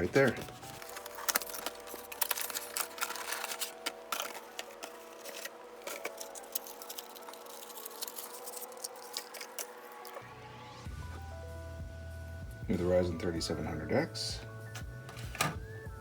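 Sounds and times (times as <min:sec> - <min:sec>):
packaging clicks and rustles: 0:00.0 - 0:10.3, 0:14.7 - 0:15.6.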